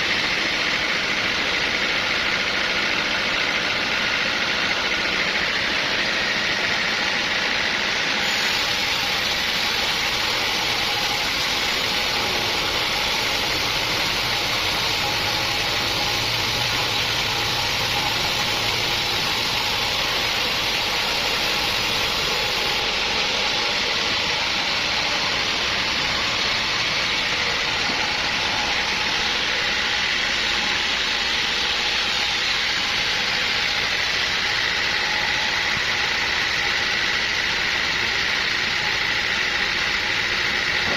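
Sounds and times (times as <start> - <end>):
sawmill machinery running: 0.0 - 40.9
high hiss: 8.0 - 37.6.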